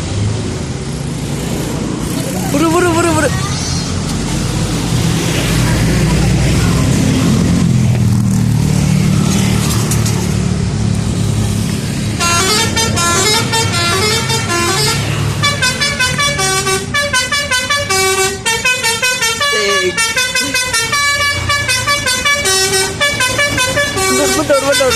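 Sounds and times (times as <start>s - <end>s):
bus engine running: 0.0s - 24.9s
musical bus horn melody: 12.1s - 24.9s.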